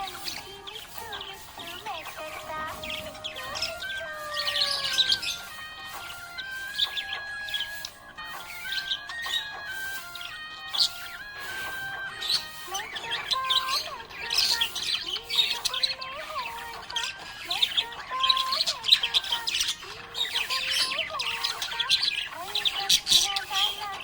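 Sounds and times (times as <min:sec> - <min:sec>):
simple melody: 0:00.0 - 0:14.8
budgerigars chirping: 0:00.0 - 0:24.0.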